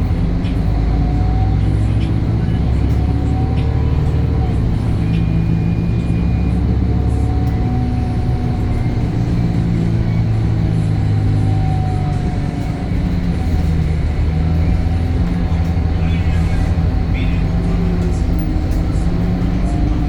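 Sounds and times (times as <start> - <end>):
diesel bus engine drone: 0.0 - 20.0.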